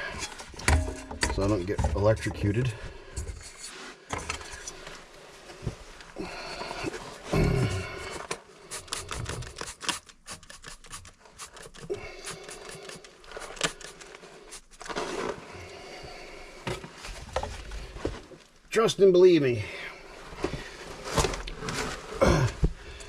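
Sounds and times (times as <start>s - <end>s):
scraping and scratching on pipe: 0.0s - 5.0s, 6.6s - 15.5s.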